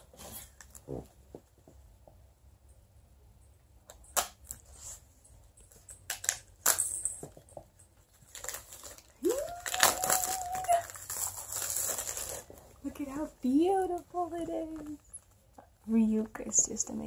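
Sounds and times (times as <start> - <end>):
packaging crinkling and rustling: 8.0 - 15.4.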